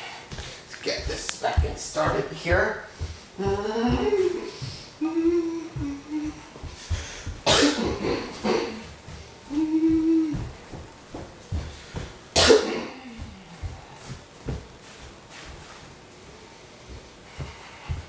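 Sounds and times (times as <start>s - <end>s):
hummed vocal sounds: 3.3s - 10.8s
person coughing: 7.4s - 8.9s, 12.3s - 13.4s.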